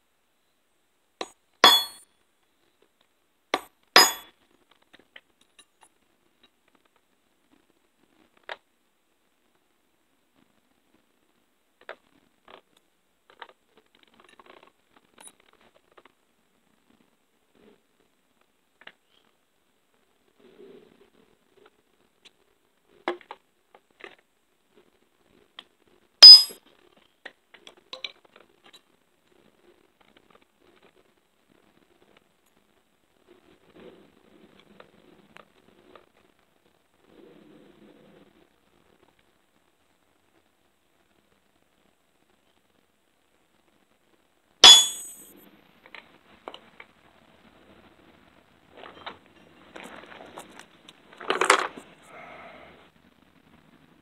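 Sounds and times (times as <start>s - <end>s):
hammer striking metal: 1.6s - 2.0s, 3.6s - 4.3s, 26.2s - 26.6s, 44.6s - 45.2s
metal-on-metal clink: 1.6s - 2.0s, 3.6s - 4.3s, 26.2s - 26.6s, 44.6s - 45.3s
small steel parts clicking: 26.2s - 26.6s.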